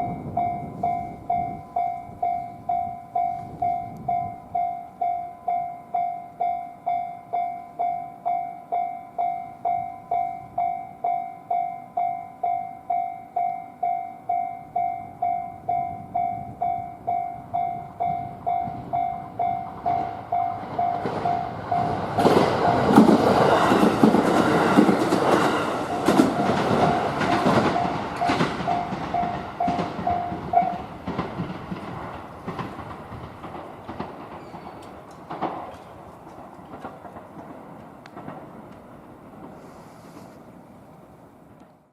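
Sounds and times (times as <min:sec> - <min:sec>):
level crossing bell ringing: 0:00.0 - 0:22.1, 0:25.9 - 0:30.9
train rumbling and wheel clatter: 0:00.0 - 0:41.9.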